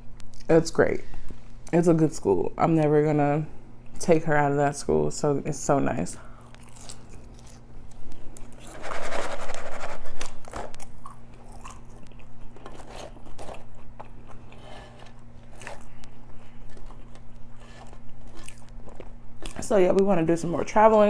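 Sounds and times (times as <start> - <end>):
crunchy chewing: 6.3 - 20.0.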